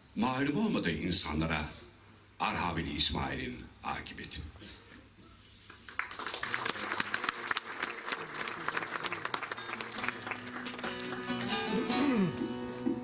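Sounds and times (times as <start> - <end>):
audience applauding: 5.7 - 12.5
plucked string melody: 10.8 - 13.0.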